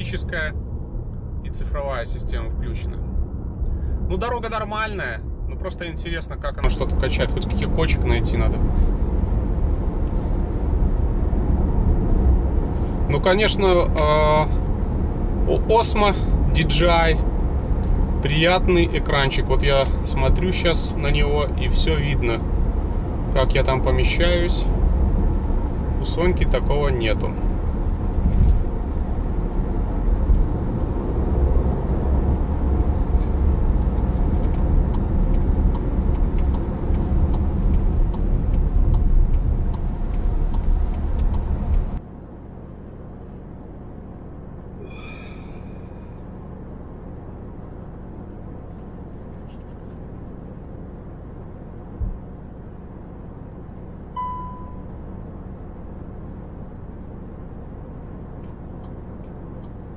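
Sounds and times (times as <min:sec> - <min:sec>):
car road and engine rumble: 0:00.0 - 0:59.9
short beep: 0:54.2 - 0:54.9.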